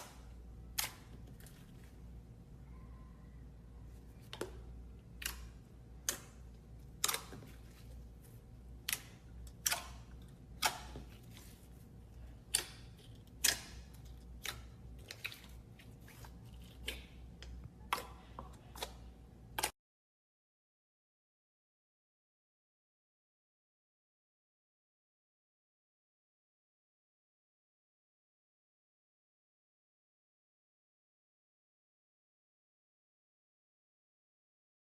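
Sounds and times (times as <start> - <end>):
faint low hum: 0.0 - 19.7.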